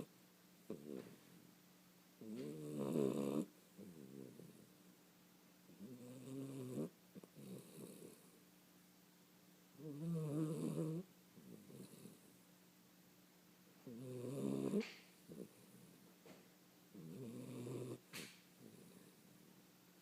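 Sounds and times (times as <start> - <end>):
puppy snoring: 0.7 - 1.3, 2.2 - 4.7, 5.7 - 8.4, 9.8 - 12.4, 13.8 - 16.0, 16.9 - 19.2.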